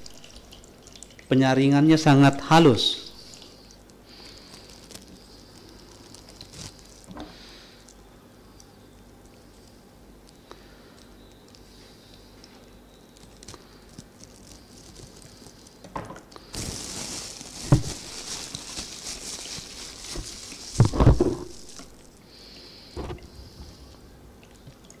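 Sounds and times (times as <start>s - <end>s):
plastic bag crinkling: 4.1s - 7.2s, 13.1s - 22.2s.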